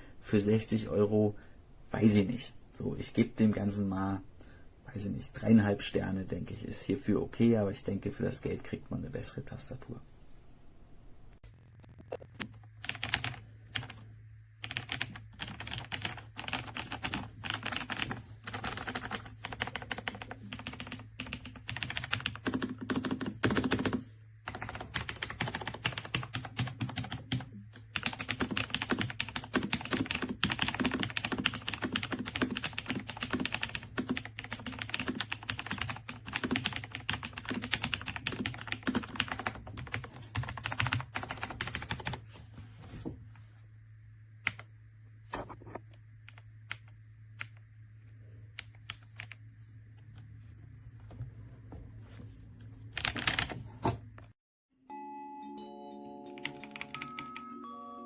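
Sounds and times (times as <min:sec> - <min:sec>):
fast mechanical keyboard typing: 0:12.4 - 0:14.0, 0:14.6 - 0:42.2, 0:53.0 - 0:53.6, 0:56.7 - 0:57.3.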